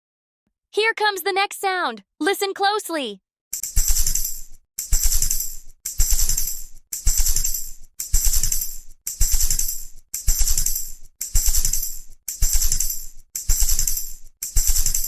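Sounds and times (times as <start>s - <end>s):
tambourine jingling: 3.5s - 15.0s.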